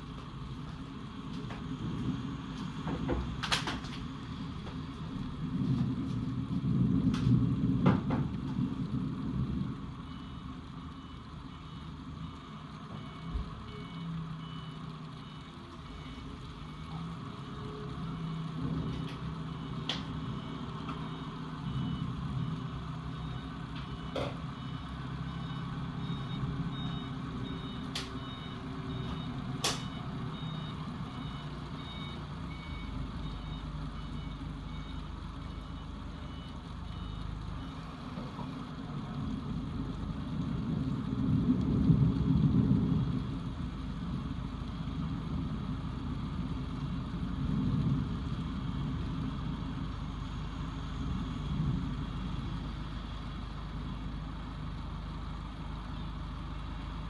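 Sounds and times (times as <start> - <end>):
heavy vehicle engine running: 0.0 - 57.0
reversing alarm beeping: 10.0 - 38.4.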